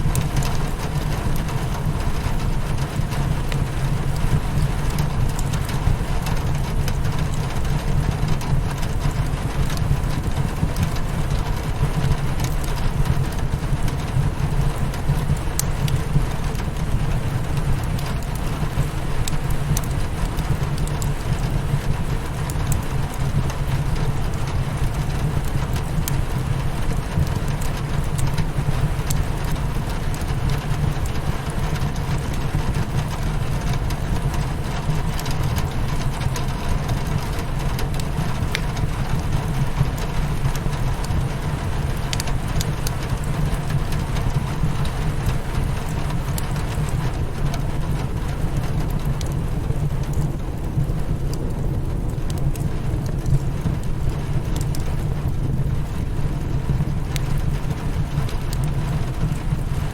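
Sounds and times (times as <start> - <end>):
rain pattering on a window: 0.0 - 59.9
wood fire crackling: 0.0 - 59.9.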